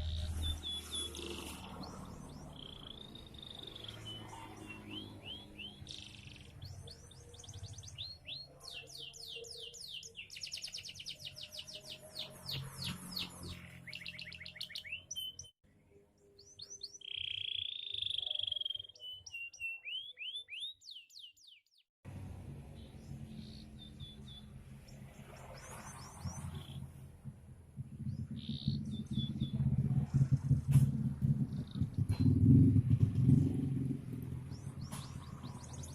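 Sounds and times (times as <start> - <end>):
canary singing trills: 0.0 - 15.5, 16.2 - 21.8, 22.8 - 26.9, 28.0 - 30.6.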